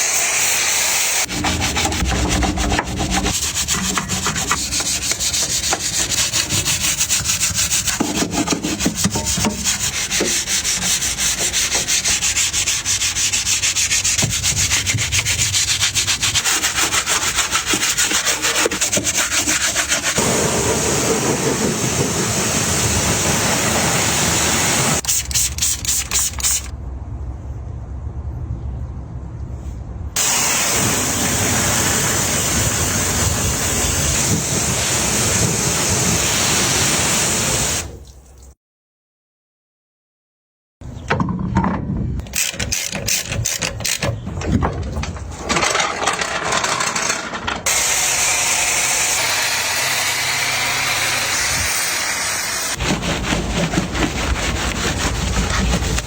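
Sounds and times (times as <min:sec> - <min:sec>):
sanding scraping rub: 0:01.2 - 0:20.3, 0:47.7 - 0:56.0.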